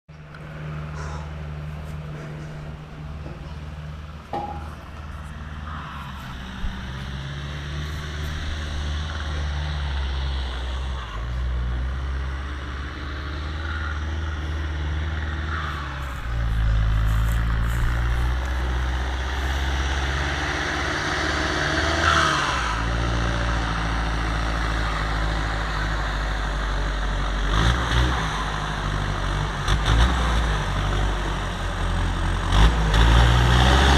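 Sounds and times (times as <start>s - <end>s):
tractor diesel engine running: 0.1s - 33.9s.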